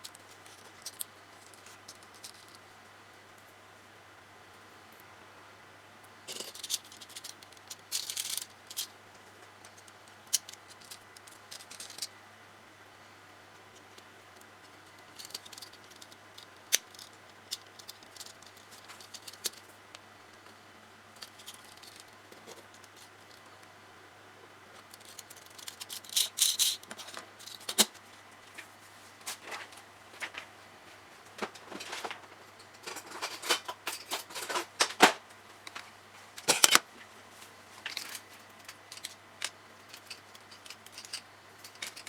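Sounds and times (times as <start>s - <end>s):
plastic parts clicking: 6.3s - 8.9s, 24.9s - 27.9s, 36.4s - 36.8s, 37.9s - 42.0s.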